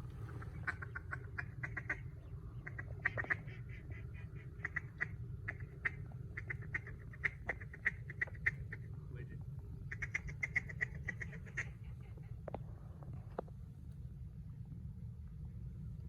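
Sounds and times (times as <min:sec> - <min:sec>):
ducks quacking: 0:00.0 - 0:08.9, 0:09.9 - 0:12.4
steady low rumble: 0:00.0 - 0:16.0.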